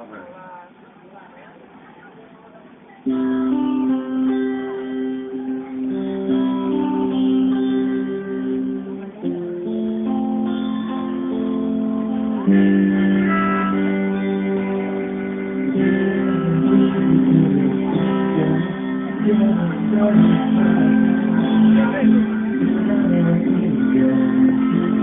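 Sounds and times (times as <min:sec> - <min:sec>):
live band with guitar chords: 0:03.0 - 0:25.0.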